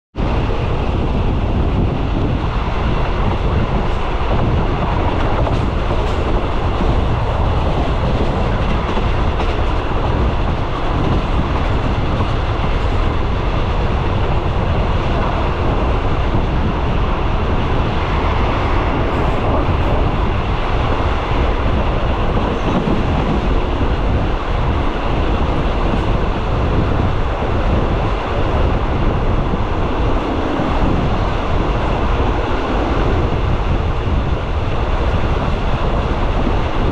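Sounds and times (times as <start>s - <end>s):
train wheels rattling on rail: 0.1s - 36.9s.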